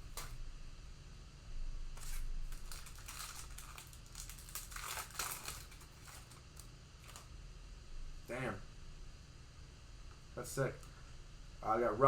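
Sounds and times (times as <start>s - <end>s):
plastic wrapper crinkling: 0.0s - 0.4s, 2.0s - 7.3s.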